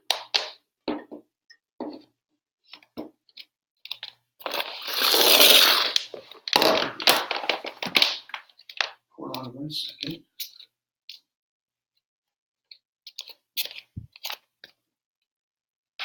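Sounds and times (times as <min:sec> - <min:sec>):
loud rustling scrape: 0:04.4 - 0:07.1.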